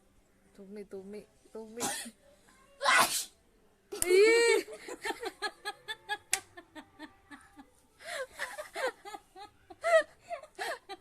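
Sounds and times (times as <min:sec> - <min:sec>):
person sneezing: 0:02.8 - 0:03.3
people laughing and giggling: 0:04.2 - 0:11.0.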